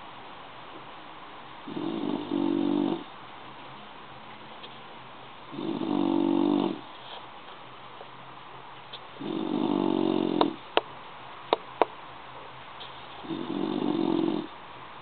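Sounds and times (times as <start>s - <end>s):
dog snoring: 1.7s - 3.1s, 5.5s - 6.9s, 9.2s - 10.6s, 13.2s - 14.6s.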